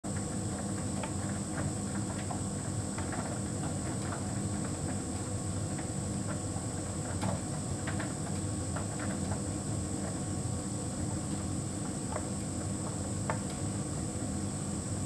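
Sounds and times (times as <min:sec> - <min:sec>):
light clicks of tumbling load: 0:07.0 - 0:09.5.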